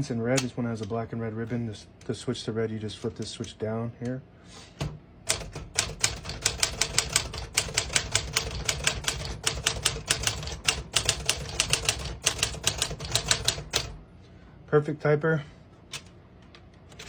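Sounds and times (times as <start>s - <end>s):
manual typewriter keys clacking: 5.3s - 14.0s.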